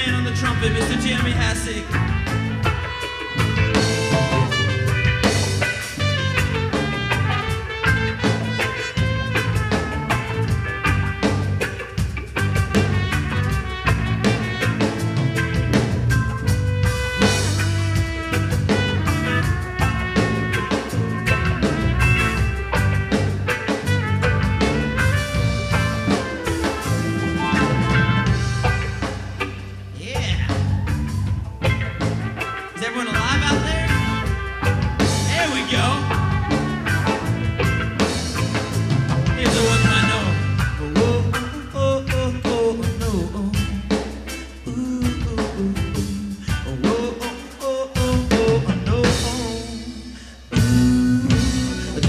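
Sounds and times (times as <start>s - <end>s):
trumpet solo: 0.0s - 30.8s, 31.6s - 41.6s
bass: 0.0s - 52.0s
drums: 0.0s - 52.0s
guitar: 0.0s - 52.0s
live band playing: 0.0s - 52.0s.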